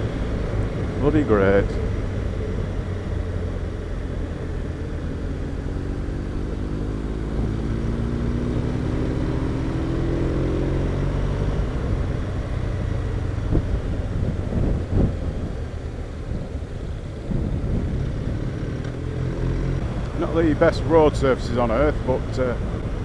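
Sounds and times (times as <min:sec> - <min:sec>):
motorcycle engine accelerating: 0:00.0 - 0:23.0
road rumble: 0:00.0 - 0:23.0
wind noise: 0:11.6 - 0:20.3.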